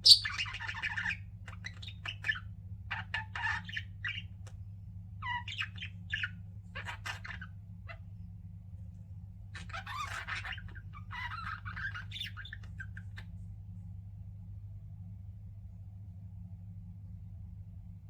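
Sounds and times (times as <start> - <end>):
budgerigars chirping and chattering: 0.0 - 4.5, 5.2 - 8.0, 9.6 - 13.3
steady low hum: 0.0 - 18.0.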